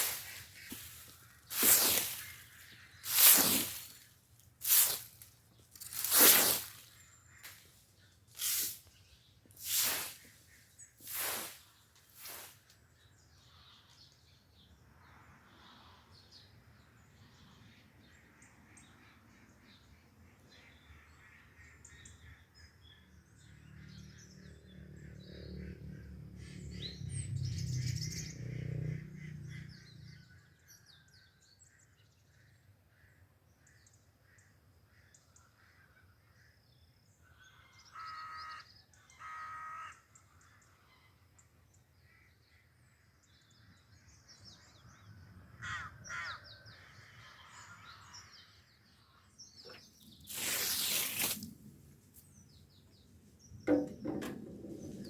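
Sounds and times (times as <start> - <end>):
harsh bird calls: 0.0 - 4.0, 8.4 - 12.5, 44.3 - 51.5
small birds chirping: 0.0 - 14.8, 46.1 - 55.0.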